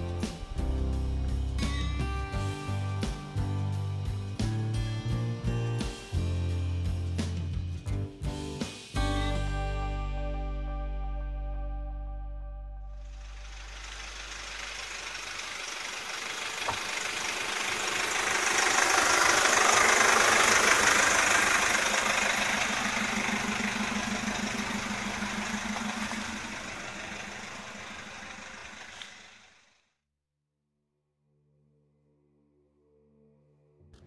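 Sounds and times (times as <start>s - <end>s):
motorhome engine and rolling noise: 13.0s - 29.6s.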